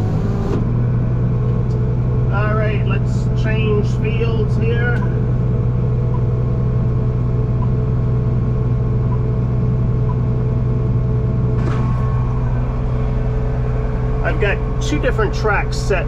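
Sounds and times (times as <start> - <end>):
tractor engine running: 0.0 - 16.0.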